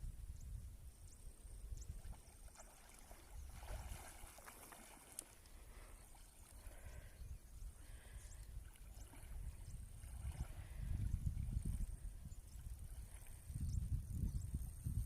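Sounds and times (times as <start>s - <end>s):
wind rumble on microphone: 0.0s - 4.9s, 6.0s - 15.0s
light water splashing: 1.8s - 7.1s, 7.9s - 13.6s.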